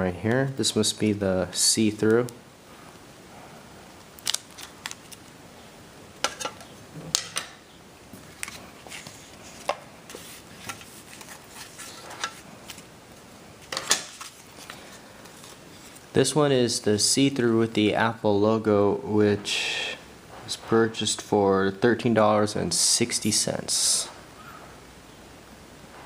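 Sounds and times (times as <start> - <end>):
packaging rustling: 4.1 - 5.3, 8.2 - 12.9, 13.6 - 16.1.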